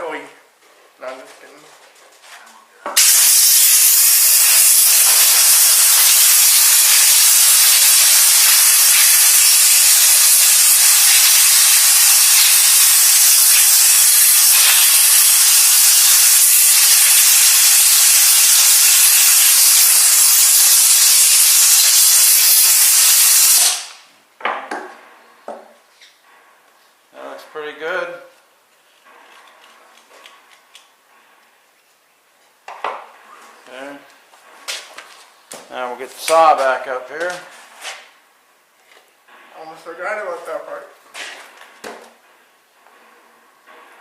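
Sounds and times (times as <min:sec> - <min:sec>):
compressed air hissing: 0:03.0 - 0:24.0.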